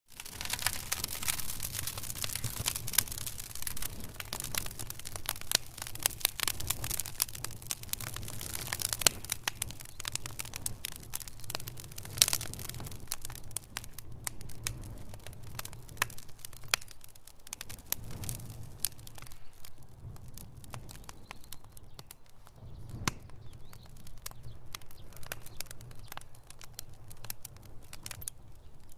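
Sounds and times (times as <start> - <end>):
campfire crackling and popping: 0.1 - 28.9
low rumble of flame: 0.1 - 28.9.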